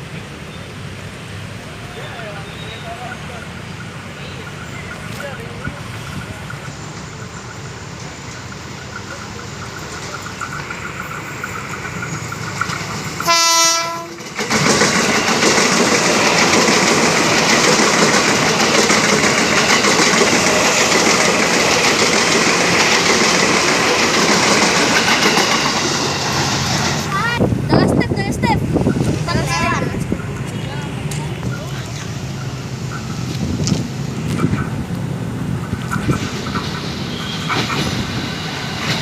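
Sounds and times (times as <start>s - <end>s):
train rumble: 0.0s - 39.0s
train wheel clatter: 3.0s - 39.0s
train horn blast: 13.2s - 14.2s.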